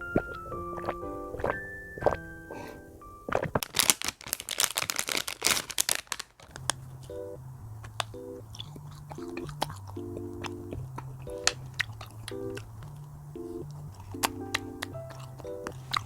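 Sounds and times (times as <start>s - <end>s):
light music with bouncing bass: 0.0s - 3.5s, 6.7s - 16.0s
crisp crackling and crunching: 3.3s - 16.0s.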